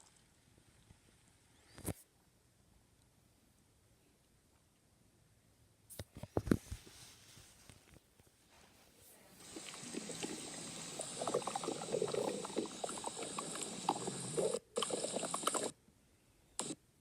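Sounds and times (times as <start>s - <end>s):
stomach growling: 9.4s - 15.8s.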